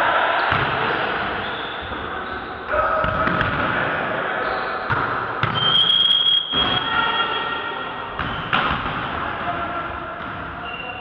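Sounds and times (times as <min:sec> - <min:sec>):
steady high whistle: 0:05.5 - 0:07.4
volleyball being struck: 0:08.2 - 0:09.2.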